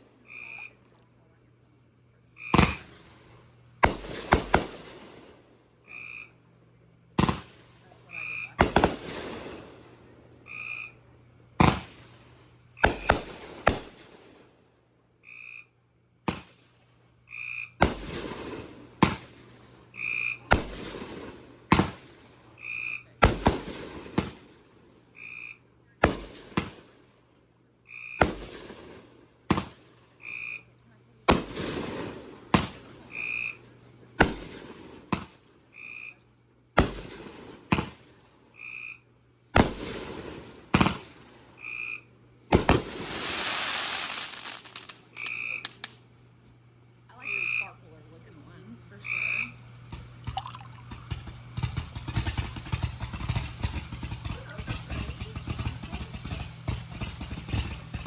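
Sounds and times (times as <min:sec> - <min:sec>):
fireworks crackling hiss: 0:01.1 - 0:05.6, 0:07.0 - 0:10.3, 0:11.2 - 0:14.7, 0:16.2 - 0:17.1, 0:17.8 - 0:19.9, 0:20.5 - 0:22.6, 0:23.2 - 0:25.1, 0:28.2 - 0:30.2, 0:31.2 - 0:35.7, 0:36.7 - 0:38.5, 0:39.4 - 0:41.6, 0:42.3 - 0:47.1, 0:49.9 - 0:58.0
fireworks bangs: 0:02.6 - 0:05.4, 0:07.1 - 0:07.8, 0:08.5 - 0:09.9, 0:11.6 - 0:14.5, 0:16.3 - 0:16.7, 0:17.8 - 0:19.6, 0:20.4 - 0:22.4, 0:23.2 - 0:24.8, 0:26.0 - 0:27.0, 0:28.2 - 0:30.0, 0:31.3 - 0:33.5, 0:34.2 - 0:35.6, 0:36.8 - 0:38.2, 0:39.5 - 0:41.5, 0:42.5 - 0:46.0, 0:49.9 - 0:58.0.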